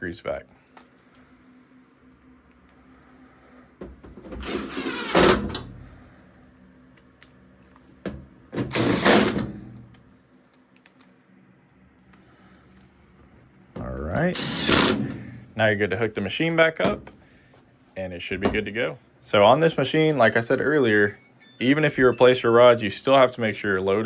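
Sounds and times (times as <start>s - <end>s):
cordless drill driving screws: 4.4s - 5.6s, 8.7s - 9.5s, 14.4s - 15.3s.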